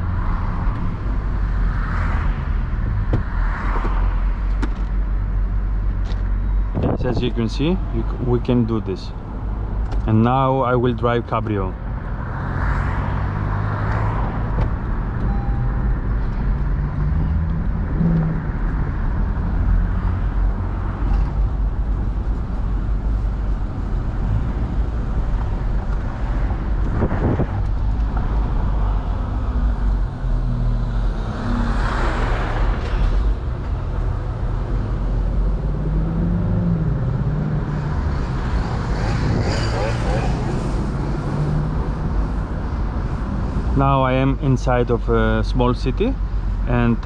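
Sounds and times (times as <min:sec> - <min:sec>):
road noise: 0:00.0 - 0:47.0
wind rush: 0:23.9 - 0:30.6, 0:37.0 - 0:43.7.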